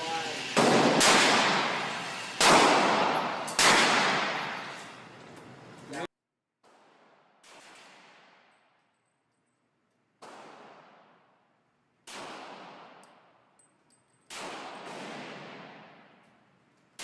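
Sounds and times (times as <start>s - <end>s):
pistol shots: 0.6s - 4.8s, 6.6s - 8.7s, 10.2s - 11.4s, 12.0s - 13.3s, 14.3s - 16.2s.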